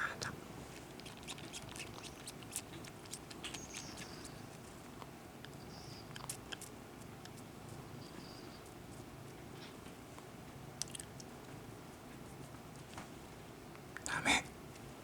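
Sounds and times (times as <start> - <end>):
kittens suckling: 0.6 - 5.1.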